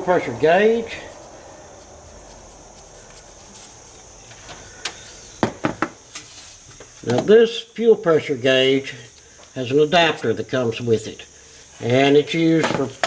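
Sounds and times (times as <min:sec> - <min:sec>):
faint steady hiss: 0:00.0 - 0:13.0.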